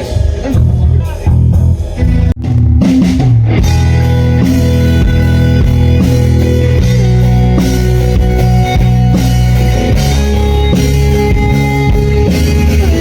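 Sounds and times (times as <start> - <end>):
rock band playing: 0.0 - 13.0
electric guitar sustained chords: 1.9 - 13.0.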